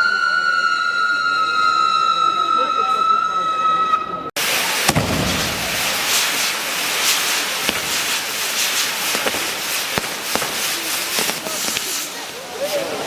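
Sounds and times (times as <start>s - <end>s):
fireworks hissing and banging: 4.4s - 13.0s
deep boom: 4.9s - 6.4s.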